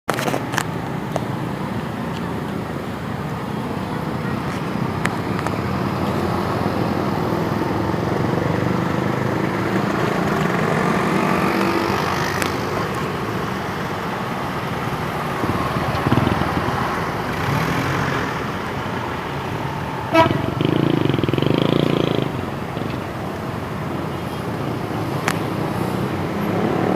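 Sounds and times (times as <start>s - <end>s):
engine and traffic noise: 0.0s - 26.9s
multi-tone horn playing a tune: 20.1s - 20.8s.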